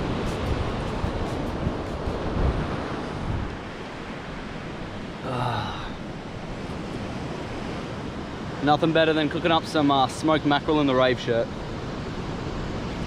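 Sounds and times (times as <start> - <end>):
wind buffeting microphone: 0.0 - 5.2
surf washing ashore: 0.0 - 13.0.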